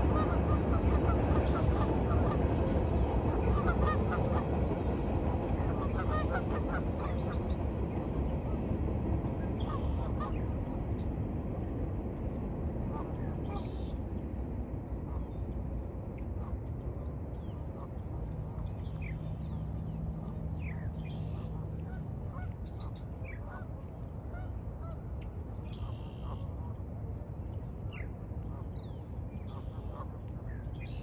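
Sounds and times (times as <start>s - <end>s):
geese honking: 0.0s - 2.4s, 3.3s - 4.5s, 5.5s - 7.4s, 21.3s - 23.7s
steady low rumble: 0.0s - 31.0s.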